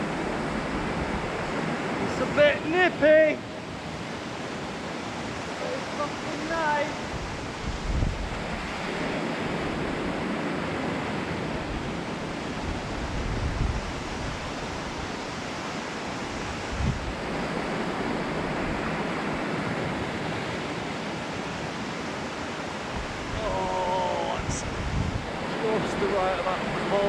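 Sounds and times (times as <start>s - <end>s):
waterfall rushing into pool: 0.0s - 3.6s, 4.3s - 7.6s, 13.8s - 27.0s.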